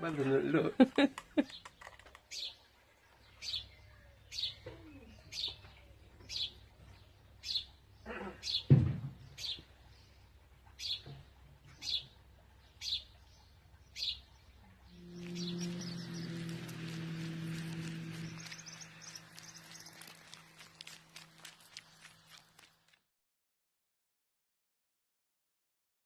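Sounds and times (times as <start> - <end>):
small bird chirping: 12.8 - 22.7
steady low hum: 14.4 - 22.6.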